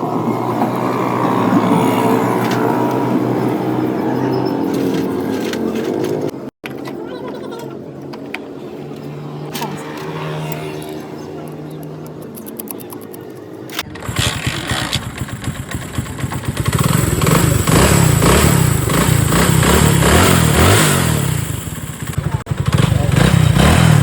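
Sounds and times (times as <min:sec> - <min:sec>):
engine running: 0:09.5 - 0:24.0.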